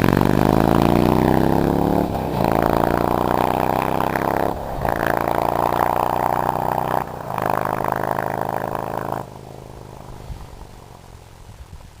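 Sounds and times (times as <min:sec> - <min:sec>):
motorcycle engine revving: 0:00.0 - 0:12.0
uneven low engine rumble: 0:00.0 - 0:12.0.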